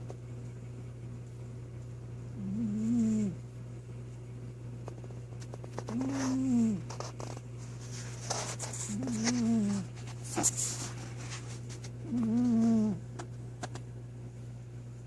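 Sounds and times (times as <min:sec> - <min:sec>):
cat snoring: 0:02.4 - 0:03.4, 0:05.9 - 0:07.0, 0:08.9 - 0:09.8, 0:12.0 - 0:13.0.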